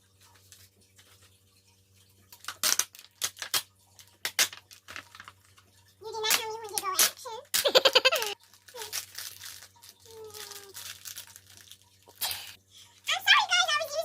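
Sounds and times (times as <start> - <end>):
plastic and cardboard crinkling: 2.3 - 12.6.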